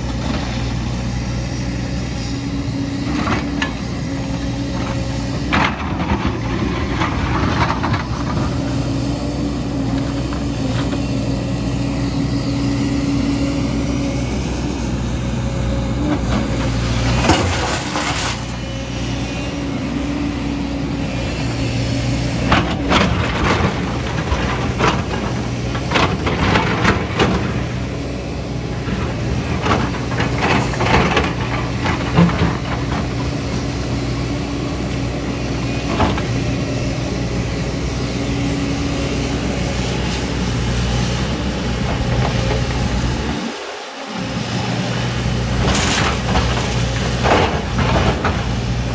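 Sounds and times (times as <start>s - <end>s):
diesel excavator engine running: 0.0s - 48.9s
bucket scraping and clanking on rock: 16.2s - 18.6s.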